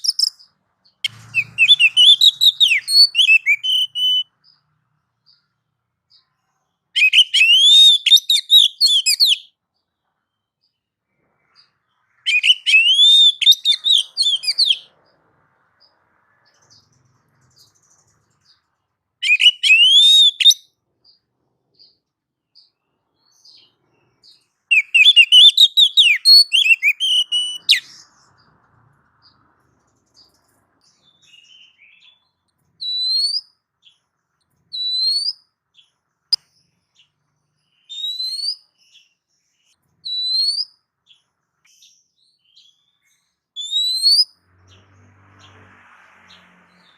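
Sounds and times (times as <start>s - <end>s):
bird song phrases: 0.0s - 46.9s
bird rising whistles: 1.6s - 4.2s, 12.3s - 14.8s, 24.7s - 28.0s, 40.1s - 40.7s, 43.6s - 44.3s.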